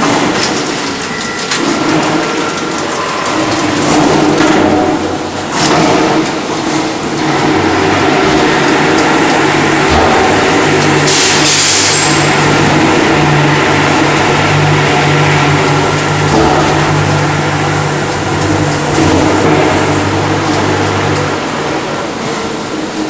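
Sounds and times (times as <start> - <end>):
paint sprayer hissing: 8.4 - 20.1.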